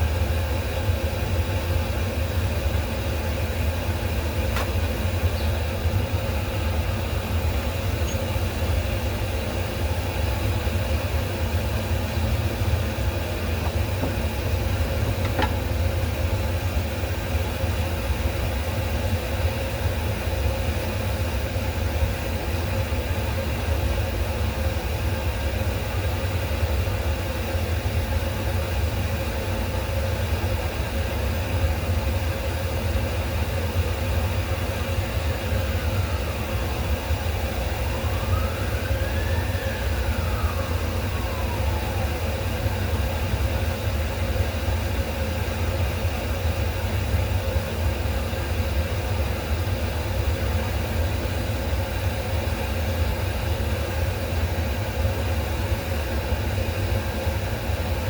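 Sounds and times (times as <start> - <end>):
low machine hum: 0.0 - 18.7.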